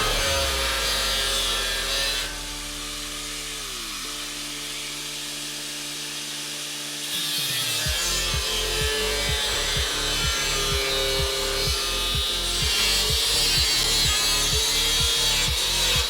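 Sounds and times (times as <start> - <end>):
power tool cutting steel: 0.0 - 16.0
background music with beat: 7.9 - 16.0.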